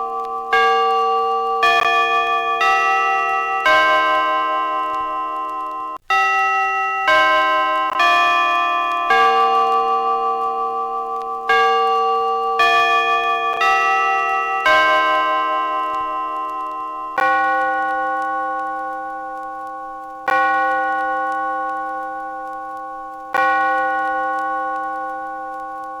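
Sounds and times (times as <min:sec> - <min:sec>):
deep bell strikes: 0:00.0 - 0:18.6.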